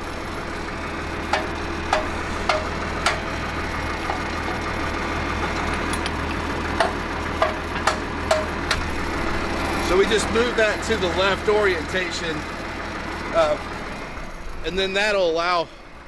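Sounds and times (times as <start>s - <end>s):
tractor engine idling: 0.0s - 16.0s
metal-on-metal knocks: 1.3s - 3.4s, 5.4s - 8.9s.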